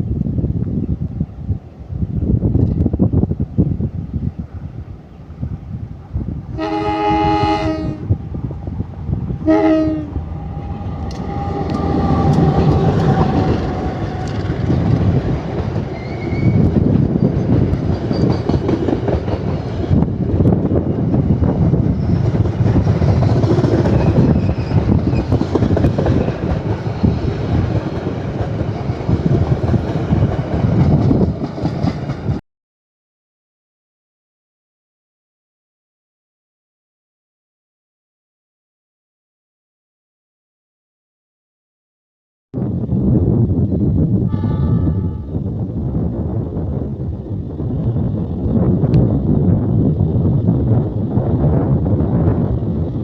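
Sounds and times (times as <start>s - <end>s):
passing train rumble: 0.0s - 32.4s, 42.6s - 53.0s
train horn blowing: 6.5s - 8.2s, 9.4s - 14.4s, 44.3s - 45.5s.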